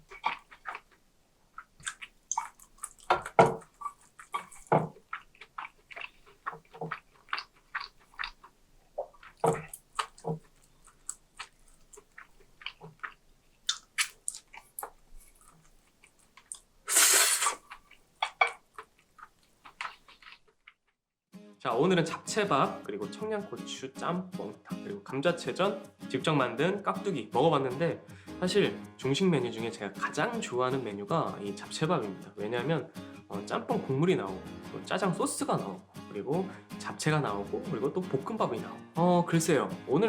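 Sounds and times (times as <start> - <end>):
chewing and smacking: 0.0 - 1.0, 1.6 - 16.7, 17.5 - 20.9.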